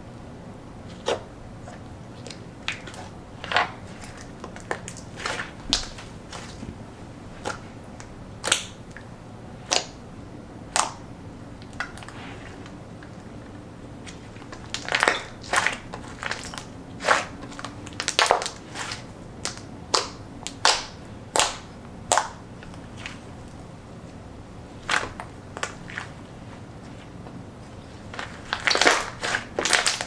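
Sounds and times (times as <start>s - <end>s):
slime crackling and popping: 2.7s - 6.6s, 7.4s - 8.8s, 10.7s - 11.0s, 14.1s - 23.3s, 24.8s - 26.2s, 28.0s - 30.0s.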